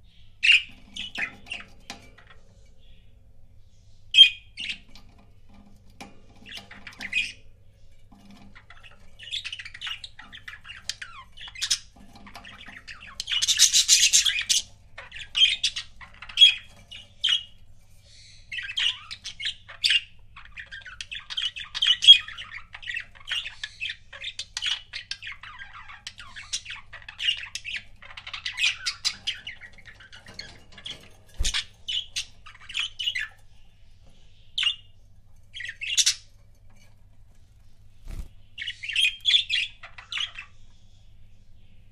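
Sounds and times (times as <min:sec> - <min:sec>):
budgerigars chattering: 0:08.7 - 0:33.8, 0:35.6 - 0:36.4.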